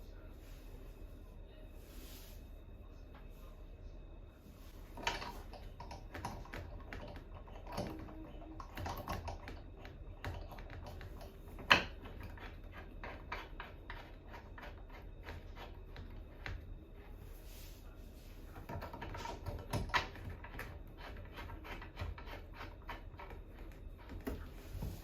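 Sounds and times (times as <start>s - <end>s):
clicks and taps of hard parts: 5.0s - 12.5s.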